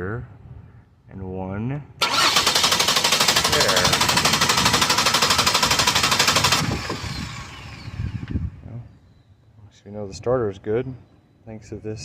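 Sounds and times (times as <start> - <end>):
car starter motor cranking: 2.0 - 8.4.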